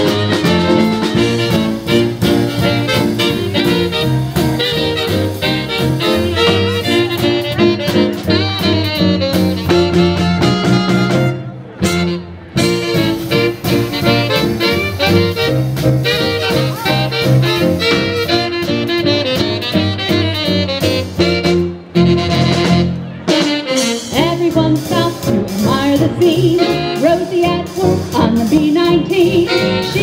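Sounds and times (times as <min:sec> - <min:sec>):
swing band playing: 0:00.0 - 0:30.0.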